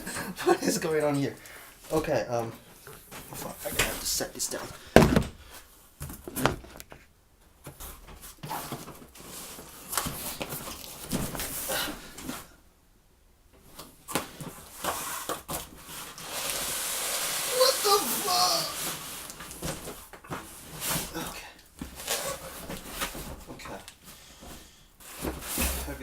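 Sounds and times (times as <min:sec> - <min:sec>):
box set down with thump: 0:04.9 - 0:05.4
steady hiss: 0:16.1 - 0:19.5.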